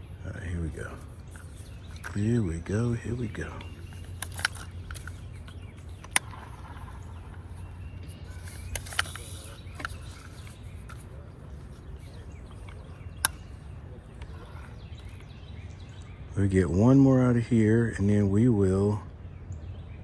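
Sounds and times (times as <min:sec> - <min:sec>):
low outdoor rumble: 0:00.0 - 0:20.0
sharp clicks: 0:01.0 - 0:15.3.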